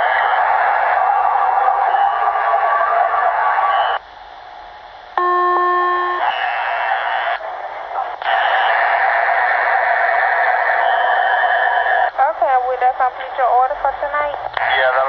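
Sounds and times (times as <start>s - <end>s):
steady beep: 5.2s - 6.5s
radio channel hiss: 6.1s - 15.0s.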